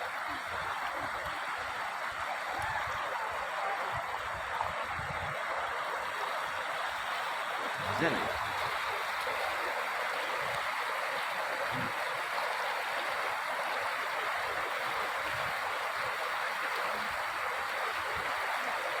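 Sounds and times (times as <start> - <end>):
stream water rushing: 0.0 - 19.0.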